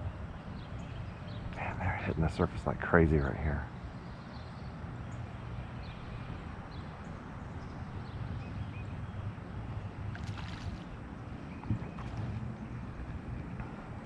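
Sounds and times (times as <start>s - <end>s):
low wind rumble: 0.0s - 14.0s
splashy rustle: 10.1s - 12.8s.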